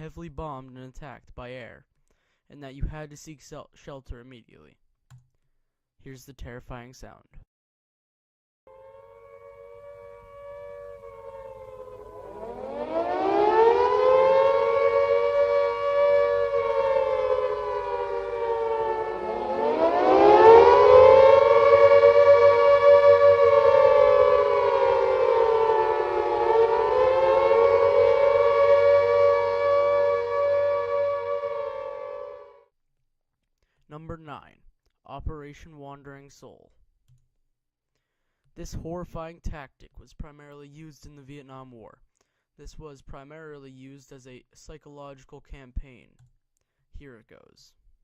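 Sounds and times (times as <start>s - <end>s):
air-raid siren wailing: 8.7s - 32.7s.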